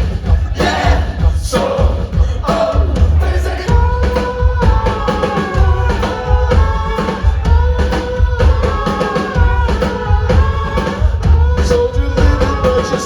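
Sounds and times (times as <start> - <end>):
heavy bass beat: 0.0 - 13.0
live rock band playing: 0.0 - 13.0
person singing: 0.0 - 13.0.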